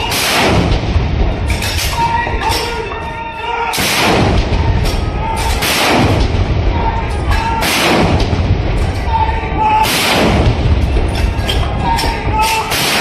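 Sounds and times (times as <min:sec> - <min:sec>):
field gun booms: 0:00.0 - 0:02.4, 0:03.8 - 0:09.1, 0:09.8 - 0:11.2, 0:12.6 - 0:13.0.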